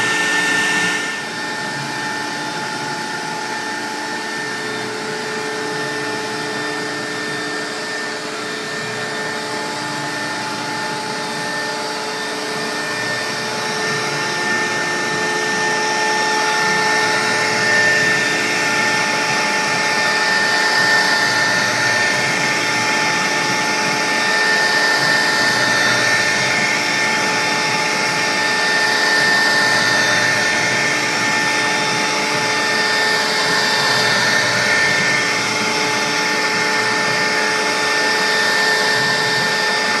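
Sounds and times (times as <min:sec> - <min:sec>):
router spindle whine: 0:00.0 - 0:40.0
rough cutting noise: 0:12.3 - 0:40.0.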